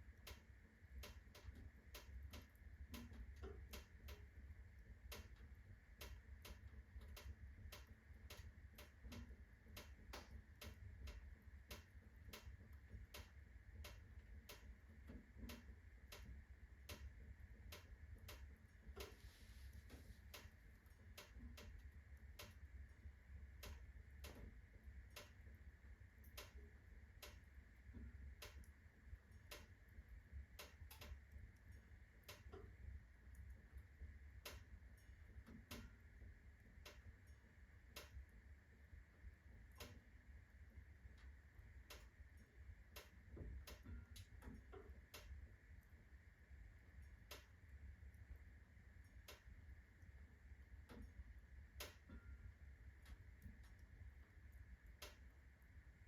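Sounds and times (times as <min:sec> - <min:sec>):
faint ticks: 0:00.0 - 0:56.0
logs burning in fireplace: 0:00.0 - 0:56.0
low steady rumble: 0:00.0 - 0:56.0.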